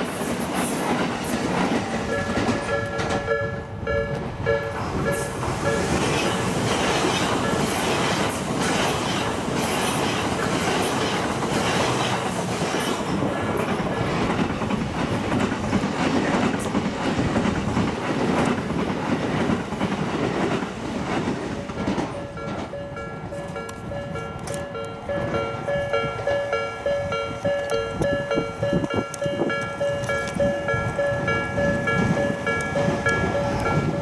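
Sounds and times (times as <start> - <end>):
electric train passing: 0.0 - 34.0
wheels clacking over rail joints: 0.0 - 34.0.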